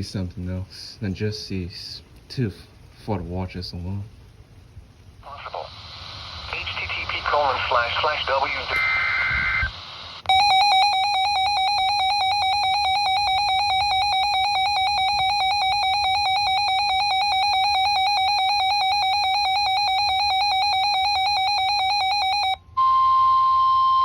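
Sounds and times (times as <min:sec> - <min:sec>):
steady warning tone: 0:06.5 - 0:24.0
warbling electronic alarm: 0:10.3 - 0:24.0.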